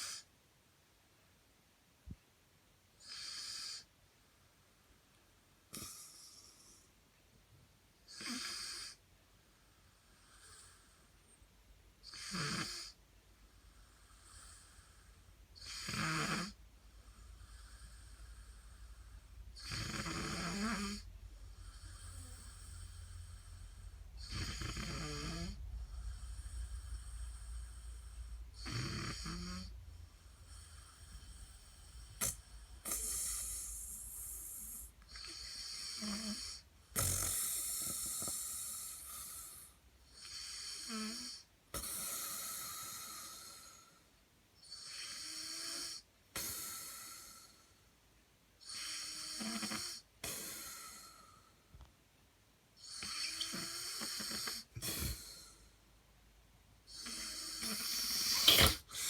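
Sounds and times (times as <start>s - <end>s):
boy snoring: 0.0s - 0.3s, 3.0s - 3.9s, 5.7s - 6.9s, 8.1s - 9.0s, 12.0s - 13.0s, 13.8s - 44.0s, 44.6s - 47.7s, 48.6s - 51.5s, 52.8s - 55.7s, 56.9s - 59.0s.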